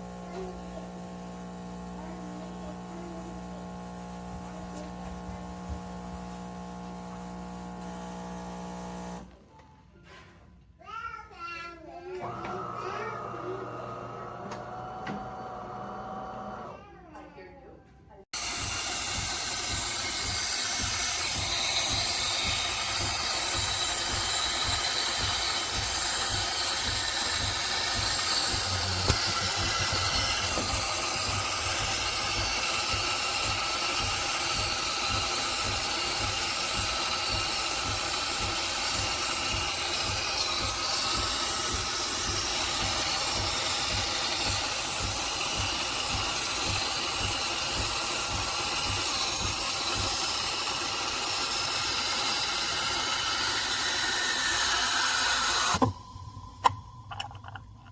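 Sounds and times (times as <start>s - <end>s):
pump pulsing rapidly: 0.0s - 9.3s, 12.2s - 16.7s, 18.3s - 57.9s
steam hissing: 18.4s - 57.9s.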